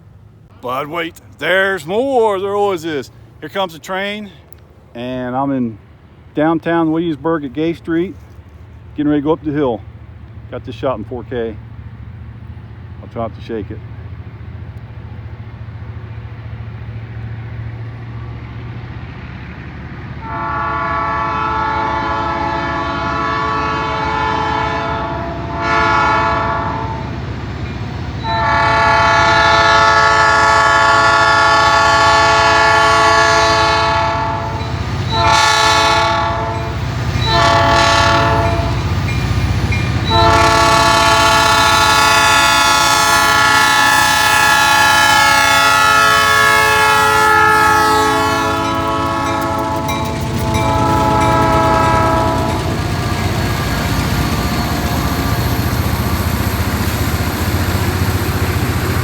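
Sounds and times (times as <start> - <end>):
diesel engines rumbling: 0.0 - 59.0
locomotive air horn blasts: 20.2 - 27.2, 28.2 - 39.0, 39.7 - 53.4.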